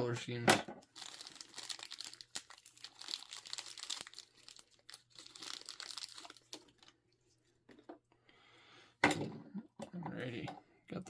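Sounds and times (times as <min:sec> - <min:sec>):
toy packaging crinkling: 0:00.8 - 0:07.0.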